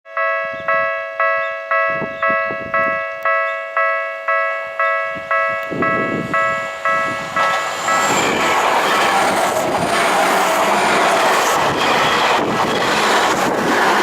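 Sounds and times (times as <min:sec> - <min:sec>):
level crossing warning bell: 0:00.1 - 0:09.1
rumble of approaching train: 0:00.2 - 0:14.0.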